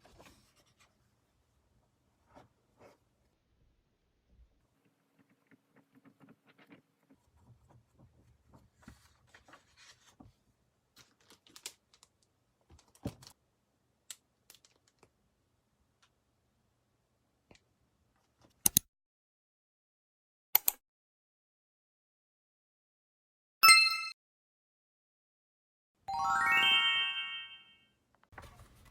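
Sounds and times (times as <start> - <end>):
paper rustling: 0.0 - 1.0, 5.1 - 10.4, 28.4 - 28.9.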